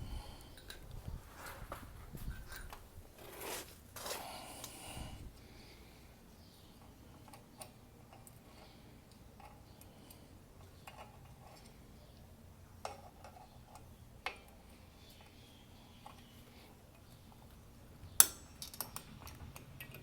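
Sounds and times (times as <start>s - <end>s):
metallic clicks of tools and parts: 18.2s - 20.0s.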